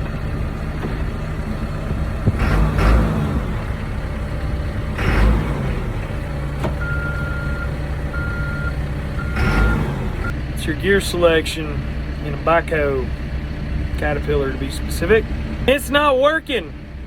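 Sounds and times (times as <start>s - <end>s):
backhoe diesel engine running: 0.0s - 17.0s
reversing alarm beeping: 6.8s - 9.9s.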